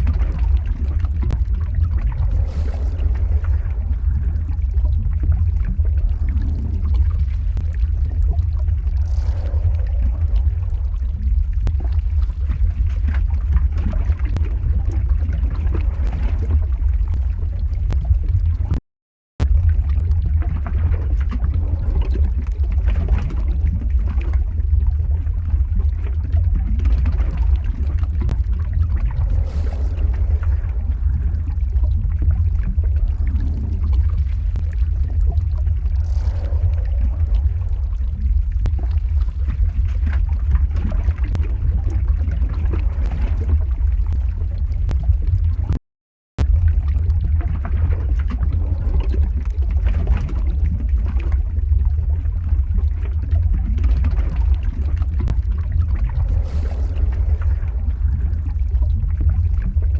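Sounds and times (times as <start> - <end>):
lava flow deep rumble: 0.0 - 18.8, 19.4 - 59.9
small crackles: 26.6 - 45.8.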